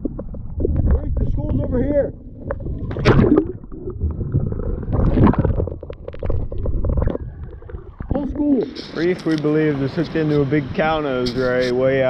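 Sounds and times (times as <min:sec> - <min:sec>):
muffled water sloshing and gurgling: 0:00.0 - 0:09.0.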